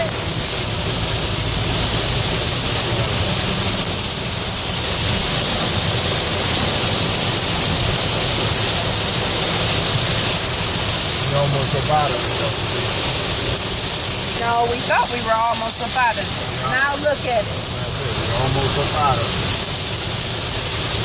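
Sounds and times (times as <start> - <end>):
heavy rain on a car: 0.0 - 21.0
tyres hissing through water: 0.0 - 21.0.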